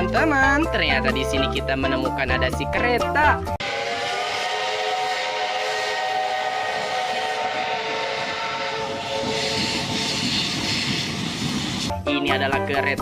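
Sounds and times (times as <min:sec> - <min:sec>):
steam hissing: 0:03.6 - 0:11.9
steam locomotive whistle: 0:03.6 - 0:11.9.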